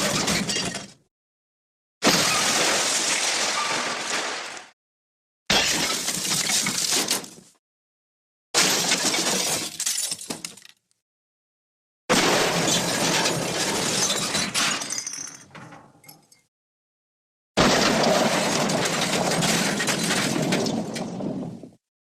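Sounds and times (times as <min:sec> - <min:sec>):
cartoon glass crash: 0:02.0 - 0:04.6, 0:05.5 - 0:07.0, 0:12.1 - 0:15.4, 0:17.6 - 0:20.8.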